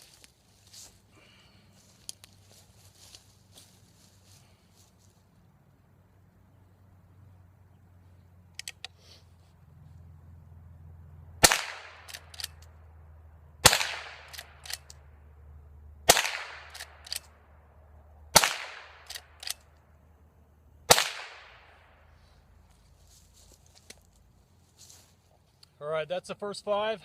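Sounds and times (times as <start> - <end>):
rifle lever clicks: 8.6 - 9.0, 12.0 - 12.7, 14.2 - 15.0, 16.7 - 17.3, 19.0 - 19.7
rifle shots echoing: 11.4 - 12.6, 13.6 - 15.0, 16.0 - 17.4, 18.3 - 19.7, 20.9 - 22.1.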